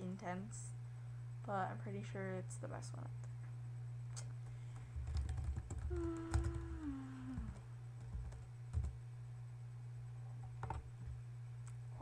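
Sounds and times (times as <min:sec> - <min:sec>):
steady low hum: 0:00.0 - 0:12.0
typing on computer keyboard: 0:05.0 - 0:06.8, 0:07.4 - 0:08.9.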